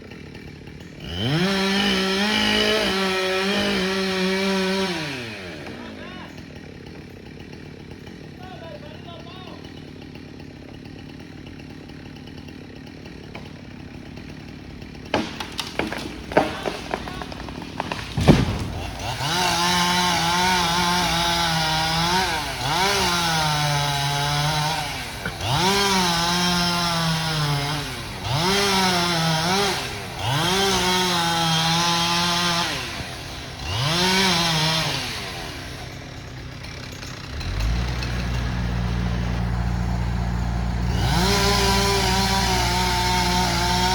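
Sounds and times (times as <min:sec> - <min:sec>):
chainsaw cutting wood: 0:00.0 - 0:43.9
knocks: 0:15.2 - 0:18.9
loud thump: 0:18.0 - 0:18.9.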